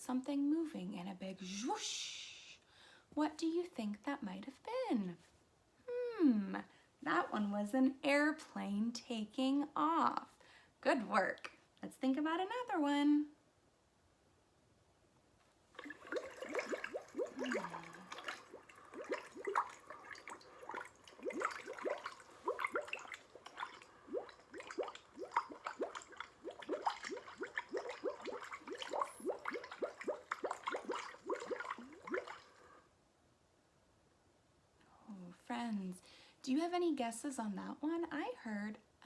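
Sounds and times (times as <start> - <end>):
water bubbling and gurgling: 15.8 - 32.8.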